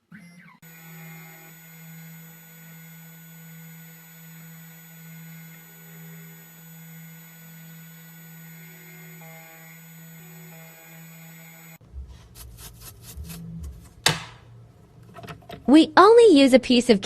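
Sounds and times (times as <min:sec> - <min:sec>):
steady low hum: 0:11.6 - 0:15.7.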